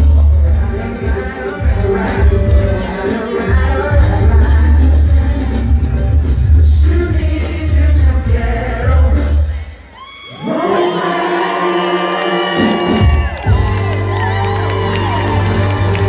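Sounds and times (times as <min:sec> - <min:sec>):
heavy bass line: 0:00.0 - 0:09.6, 0:12.9 - 0:16.0
live band music: 0:00.0 - 0:09.7, 0:12.4 - 0:16.0
person singing: 0:00.0 - 0:16.0.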